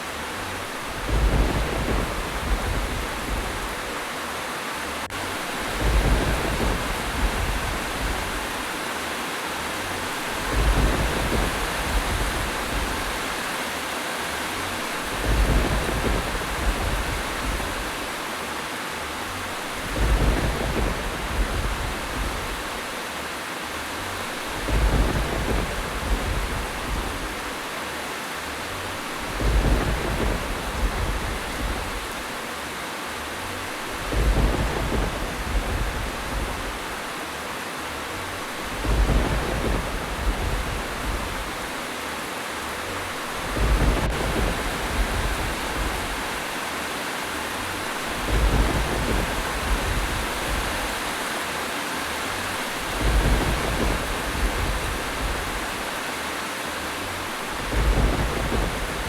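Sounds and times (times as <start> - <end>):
heavy rain: 0.0 - 59.0
low rumble of thunder: 0.3 - 4.2, 5.0 - 8.9, 9.6 - 13.7, 14.3 - 18.3, 19.2 - 23.1, 23.7 - 27.7, 28.4 - 32.4, 33.2 - 37.2, 38.0 - 41.9, 42.6 - 46.6, 47.4 - 51.2, 52.3 - 56.1, 56.9 - 59.0.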